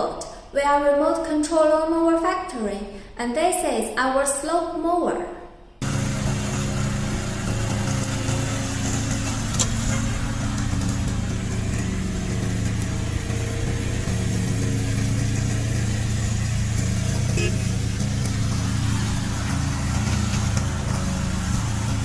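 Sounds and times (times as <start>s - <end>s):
mower engine running: 5.8s - 22.0s.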